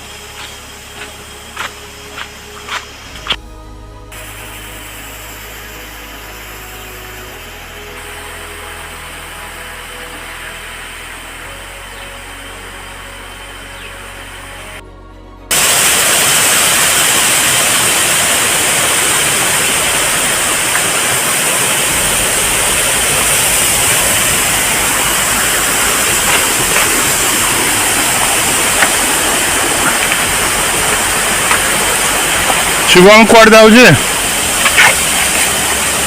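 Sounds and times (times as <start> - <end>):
waterfall rushing: 15.5 - 36.0.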